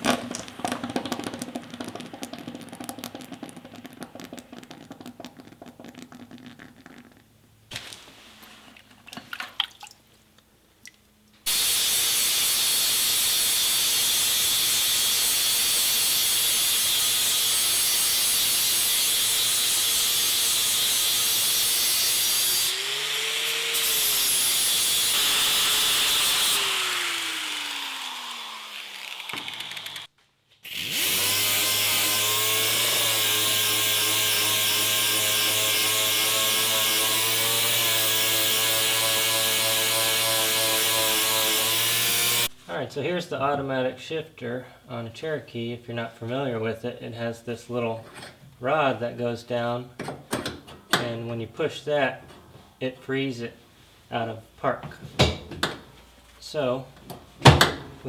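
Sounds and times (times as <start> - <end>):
power tool grinding steel: 11.5 - 42.6.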